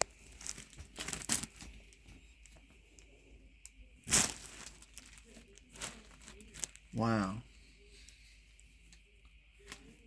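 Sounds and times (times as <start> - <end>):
packaging and cloth rustling: 0.0 - 2.2, 4.0 - 6.9.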